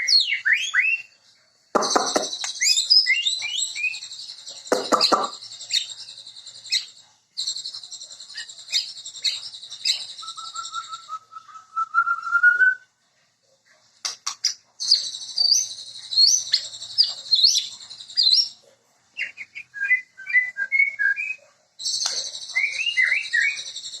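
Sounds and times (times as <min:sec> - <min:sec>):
songbird whistles and chirps: 0:00.0 - 0:01.2, 0:01.8 - 0:12.9, 0:14.4 - 0:24.0.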